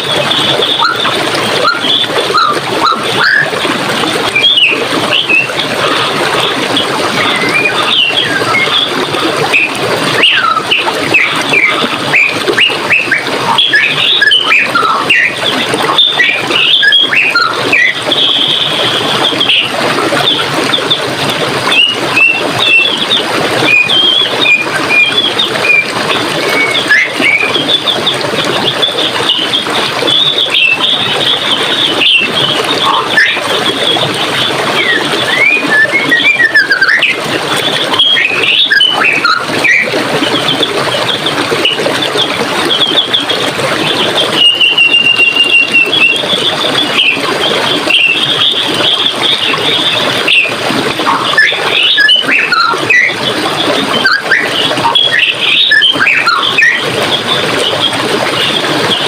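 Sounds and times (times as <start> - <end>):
running water rushing: 0.0 - 59.0
bird trilling: 0.4 - 3.5, 29.0 - 33.9, 54.0 - 56.8.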